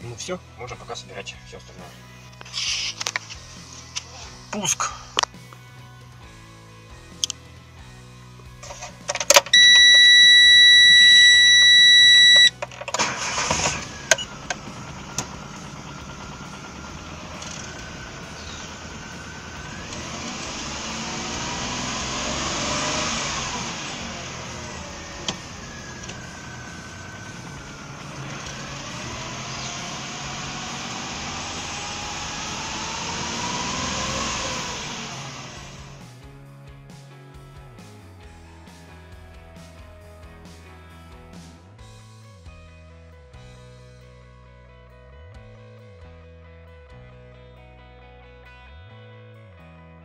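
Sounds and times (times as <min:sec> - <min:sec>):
car engine starting and revving: 0:08.6 - 0:36.2
loud electronic beep: 0:09.4 - 0:12.6.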